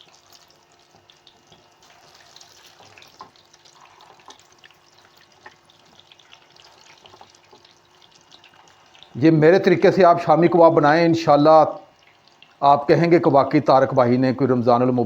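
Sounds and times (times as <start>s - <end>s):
food sizzling in oil: 0.0s - 9.2s
oil popping and crackling: 0.0s - 9.9s, 11.8s - 12.6s.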